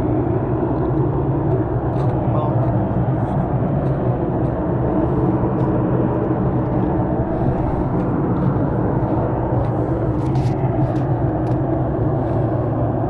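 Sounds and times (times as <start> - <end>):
low droning rumble: 0.0 - 13.0.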